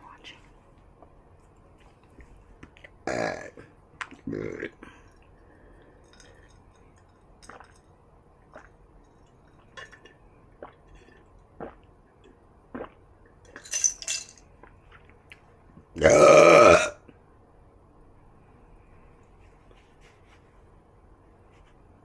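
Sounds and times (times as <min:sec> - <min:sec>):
woman burping: 0:16.0 - 0:17.0.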